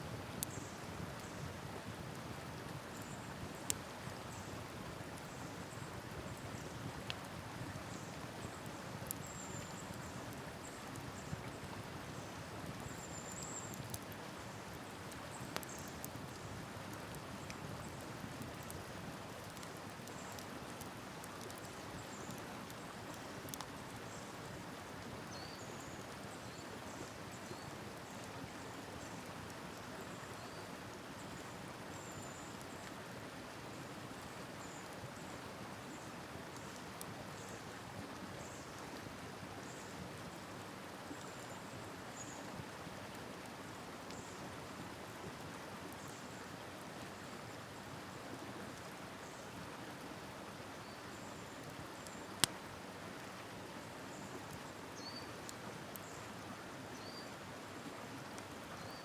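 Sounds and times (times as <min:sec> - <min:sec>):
river flowing: 0:00.0 - 0:59.0.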